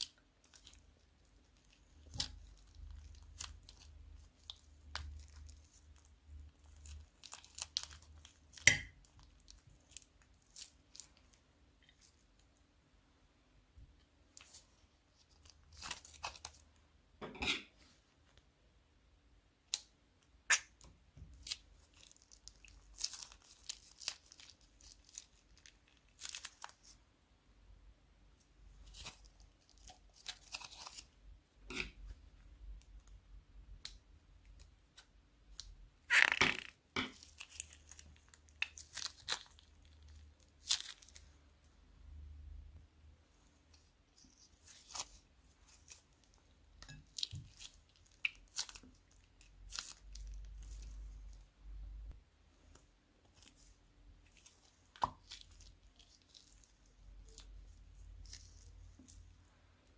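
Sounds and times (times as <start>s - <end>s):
plastic bags crinkling: 21.5s - 26.9s.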